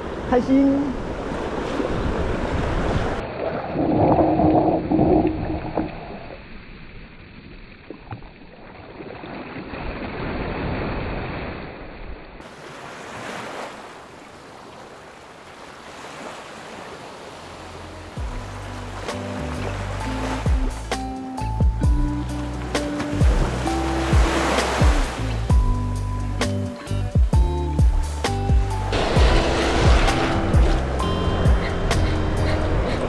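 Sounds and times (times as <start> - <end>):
surf washing on beach: 9.7 - 20.5, 22.9 - 25.4, 28.9 - 33.0.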